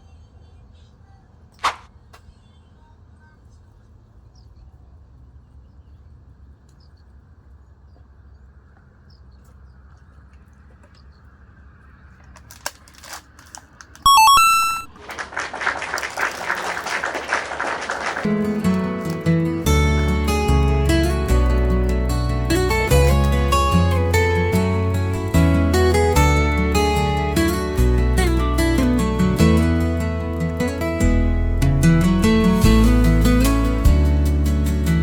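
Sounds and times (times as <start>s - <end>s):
faint outdoor ambience: 0.0s - 35.0s
electronic beeping tones: 14.1s - 15.0s.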